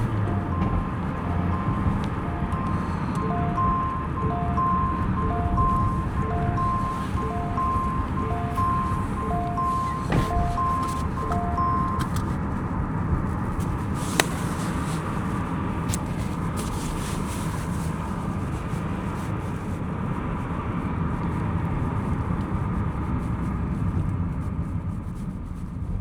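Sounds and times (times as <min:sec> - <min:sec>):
road and tyre rumble: 0:00.0 - 0:26.0
short beeps: 0:00.1 - 0:12.3.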